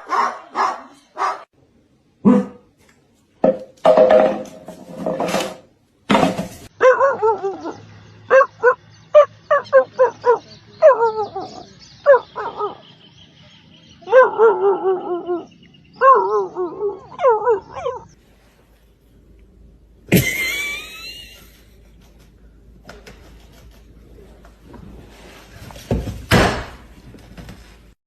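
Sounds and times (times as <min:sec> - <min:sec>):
dog yipping: 0:06.8 - 0:12.8, 0:14.1 - 0:18.2
dog whining: 0:14.1 - 0:18.2.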